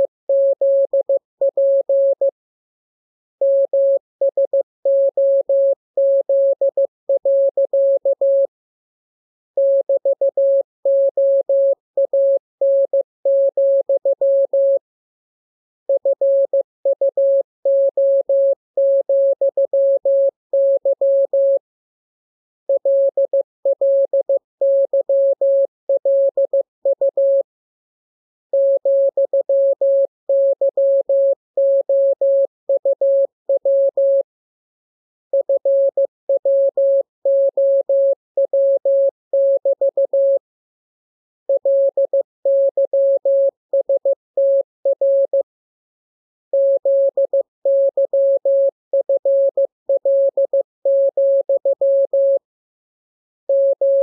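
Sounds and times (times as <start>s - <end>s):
morse code beeps: 0.0s - 2.3s, 28.6s - 34.2s, 35.3s - 40.4s, 41.5s - 45.4s, 46.5s - 52.4s, 53.5s - 54.0s.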